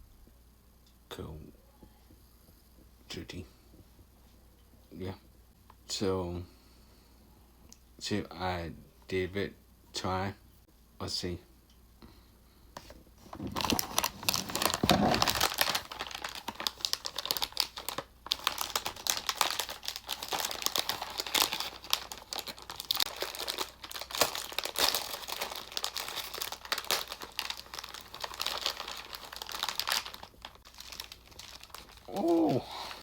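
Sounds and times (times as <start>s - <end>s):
plastic wrapper crinkling and tearing: 13.3s - 33.0s.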